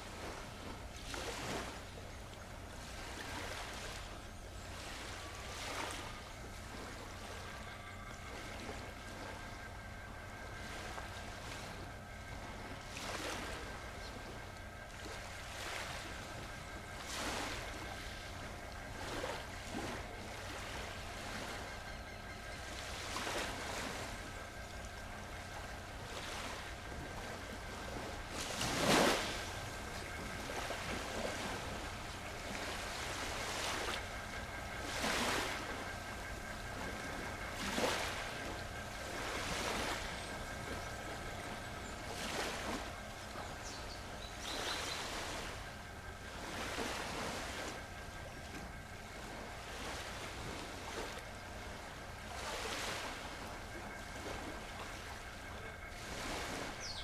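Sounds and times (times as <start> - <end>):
small sea waves washing in: 22.7 - 57.0.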